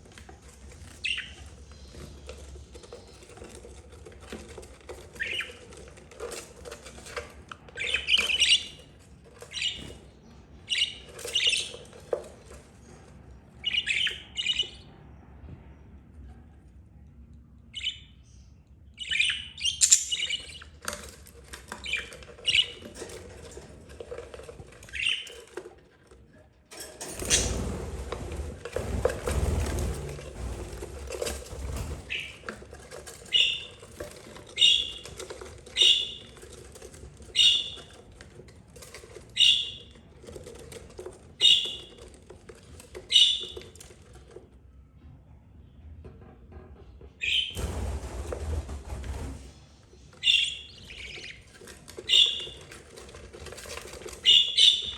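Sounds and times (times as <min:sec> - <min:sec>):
budgerigars chirping: 0:01.0 - 0:01.4, 0:13.6 - 0:14.9, 0:19.0 - 0:20.7, 0:33.3 - 0:33.8, 0:34.5 - 0:35.1, 0:35.8 - 0:36.4, 0:37.3 - 0:37.8, 0:39.3 - 0:39.9, 0:41.4 - 0:41.9, 0:43.1 - 0:43.6, 0:50.2 - 0:52.7, 0:54.2 - 0:54.9.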